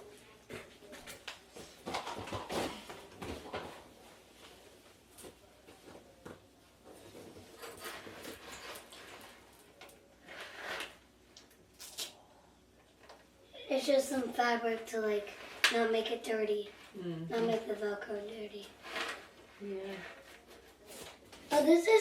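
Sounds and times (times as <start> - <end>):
fabric rustling and scraping: 6.8 - 9.6, 10.2 - 11.1, 18.6 - 21.6.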